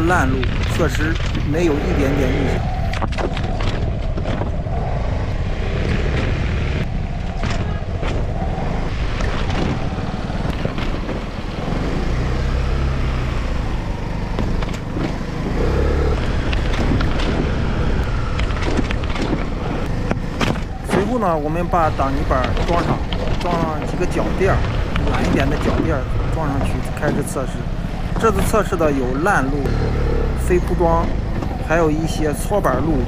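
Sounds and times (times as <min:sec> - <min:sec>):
wind noise: 0:00.0 - 0:33.0
scooter engine: 0:09.8 - 0:33.0.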